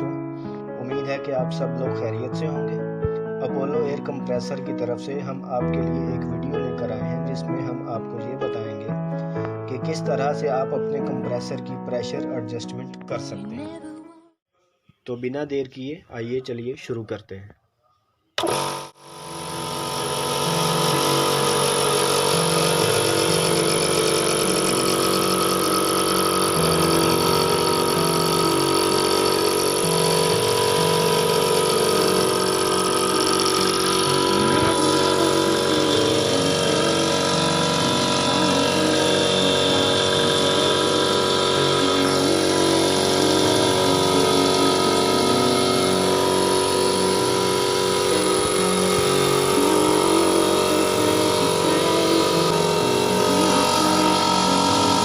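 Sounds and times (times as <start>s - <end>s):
air compressor running: 18.4s - 55.0s.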